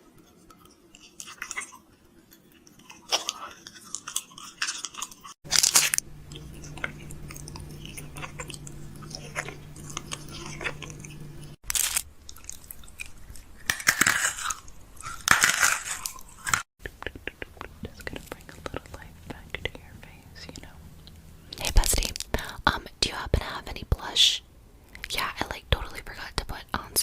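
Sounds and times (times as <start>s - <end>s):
food packaging crinkling: 2.8s - 16.7s
steady low hum: 5.2s - 27.0s.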